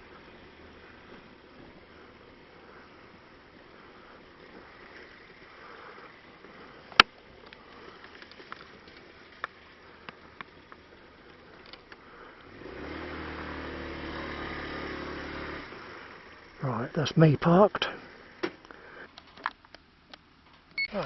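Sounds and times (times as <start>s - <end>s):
motorcycle engine idling: 0.0s - 12.6s, 13.5s - 16.9s.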